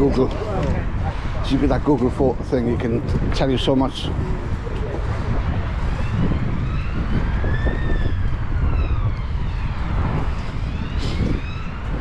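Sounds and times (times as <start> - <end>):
wind buffeting microphone: 0.0 - 12.0
emergency vehicle siren wailing: 4.4 - 12.0.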